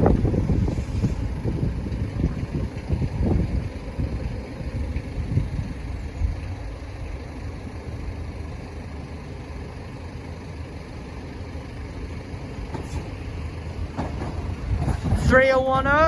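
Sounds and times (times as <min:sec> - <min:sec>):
diesel train low rumble: 0:00.0 - 0:16.0.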